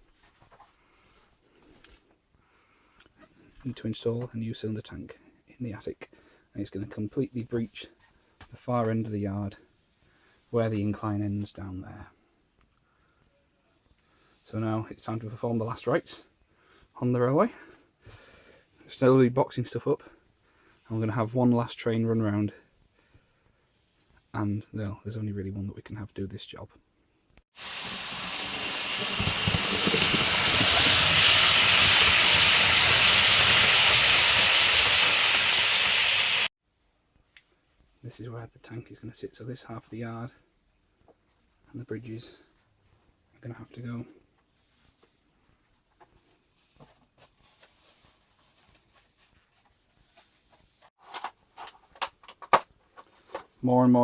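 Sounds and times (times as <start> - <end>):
model train rumbling on track: 27.8 - 35.6.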